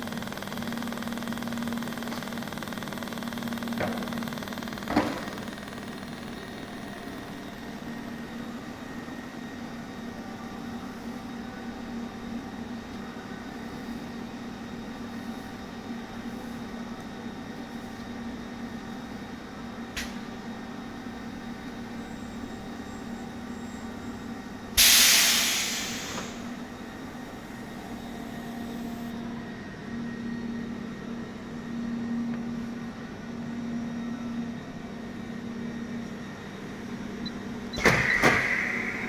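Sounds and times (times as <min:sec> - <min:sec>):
loud hiss of released air: 0:24.8 - 0:26.6.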